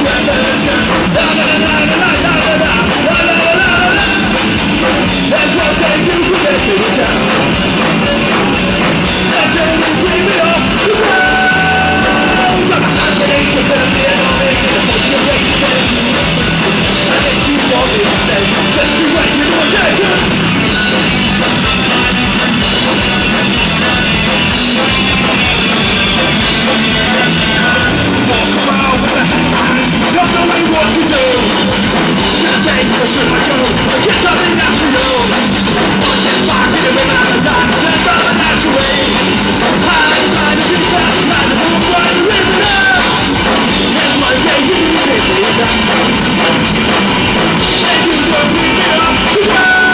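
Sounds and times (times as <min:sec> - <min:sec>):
bass guitar: 0:00.0 - 0:49.9
distorted electric guitars: 0:00.0 - 0:49.9
drum kit with crashing cymbals: 0:00.0 - 0:49.9
person yelling vocals: 0:09.3 - 0:16.0, 0:39.8 - 0:45.8.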